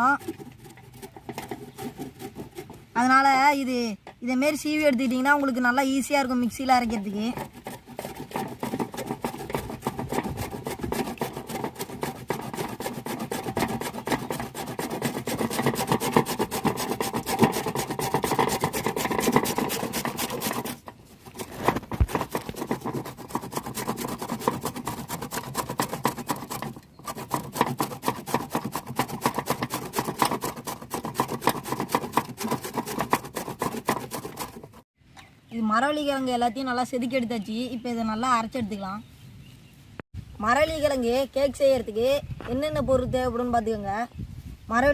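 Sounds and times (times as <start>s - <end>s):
root being shaved with scraping strokes: 0.0s - 3.1s, 6.6s - 34.9s.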